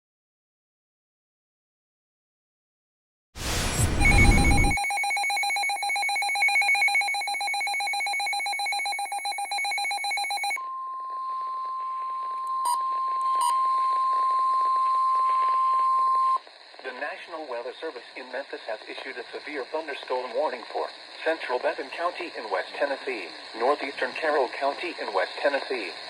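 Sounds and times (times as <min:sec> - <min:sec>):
radio static burst: 0:03.4 - 0:04.8, 0:16.4 - 0:26.0
fast-pulsing electronic beep alarm: 0:03.4 - 0:11.1
steady warning tone: 0:03.4 - 0:16.4.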